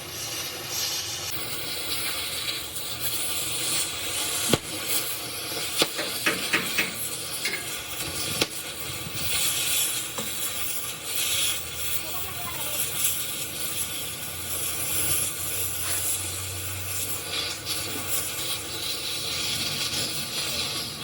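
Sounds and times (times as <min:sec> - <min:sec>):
workshop hiss: 0:00.0 - 0:21.0
tools clicking and knocking: 0:05.8 - 0:07.7.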